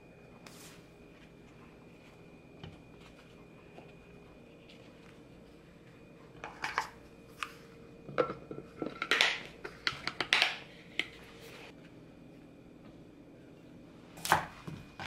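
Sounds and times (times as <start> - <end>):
kitchen items clicking and knocking: 8.1 - 11.2.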